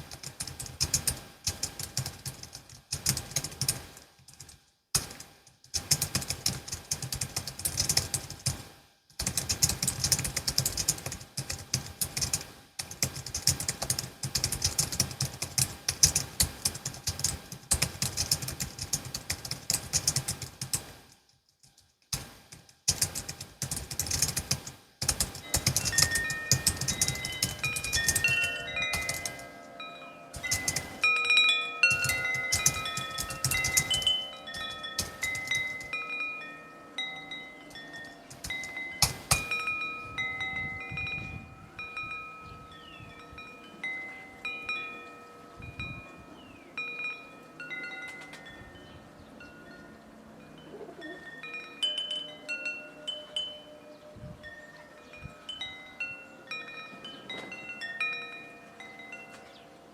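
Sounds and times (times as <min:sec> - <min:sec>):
chime tones ringing: 0:25.4 - 0:59.9.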